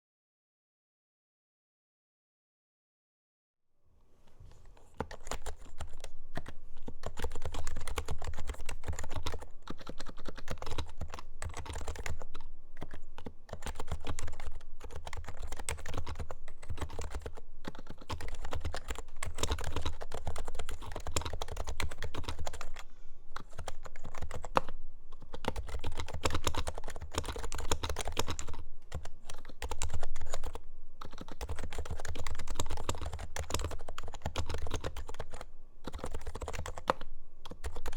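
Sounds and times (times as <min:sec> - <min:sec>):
keyboard typing: 0:04.7 - 0:22.8, 0:23.4 - 0:37.9.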